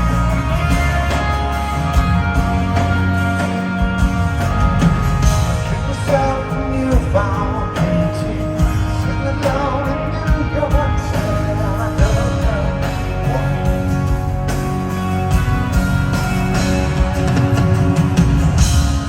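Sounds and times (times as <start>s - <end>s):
vocal or lead melody: 0.0s - 14.6s
live rock band playing: 0.0s - 19.0s.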